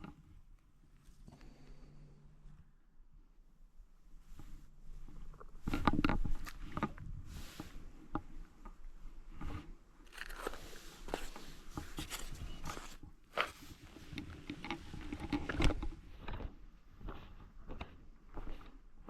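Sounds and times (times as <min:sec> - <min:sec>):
crunching and clicking: 0:08.6 - 0:16.5.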